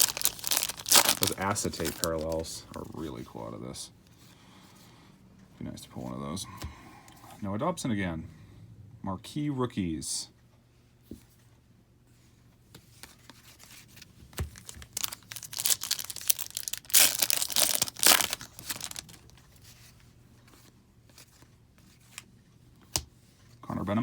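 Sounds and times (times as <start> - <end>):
foil wrapper tearing and crinkling: 0.0 - 2.5, 14.4 - 19.4.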